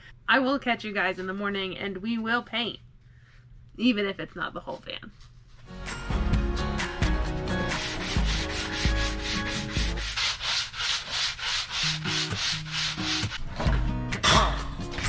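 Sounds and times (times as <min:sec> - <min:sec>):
sandpaper rubbing: 0:06.8 - 0:13.5.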